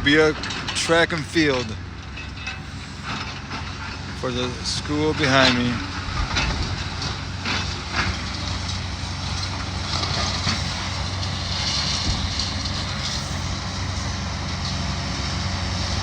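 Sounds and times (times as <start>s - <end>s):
diesel engine drone: 0.0s - 16.0s
sharp knocks and crunches: 9.4s - 13.5s.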